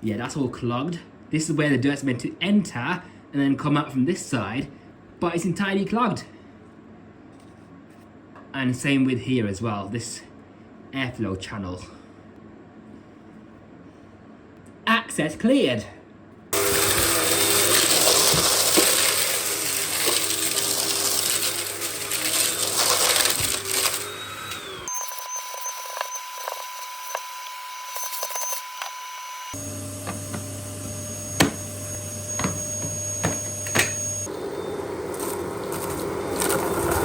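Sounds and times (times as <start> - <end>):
vacuum cleaner motor drone: 16.6 - 37.0.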